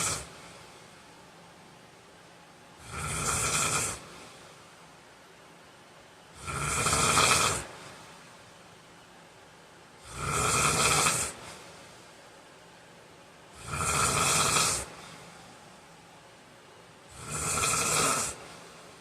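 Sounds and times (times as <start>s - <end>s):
man snoring: 0.0s - 0.3s, 2.8s - 4.1s, 6.4s - 7.8s, 10.0s - 11.4s, 13.5s - 15.0s, 17.1s - 18.5s.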